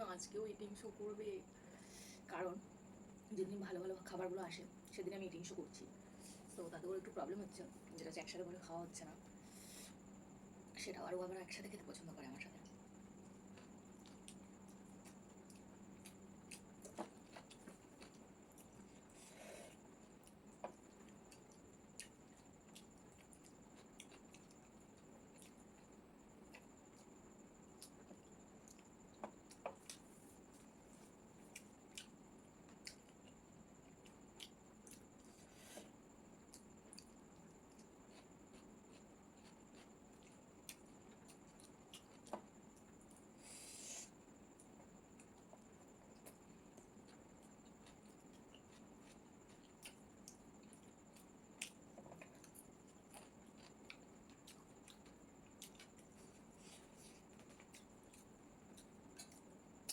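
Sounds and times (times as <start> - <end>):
faint high-pitched whine: 0.0 - 59.9
soft wet chewing: 12.4 - 59.9.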